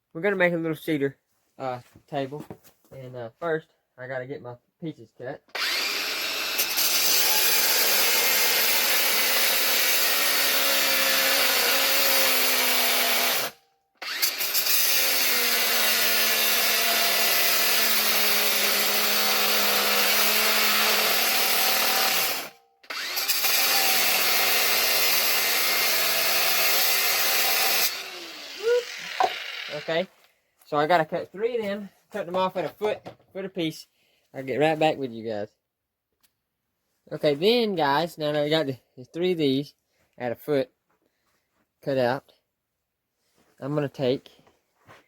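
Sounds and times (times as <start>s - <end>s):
angle grinder cutting metal: 5.5s - 30.1s.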